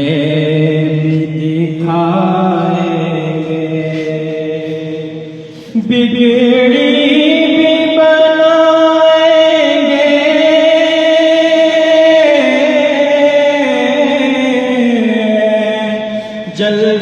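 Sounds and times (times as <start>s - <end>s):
man singing long held notes: 0.0s - 17.0s.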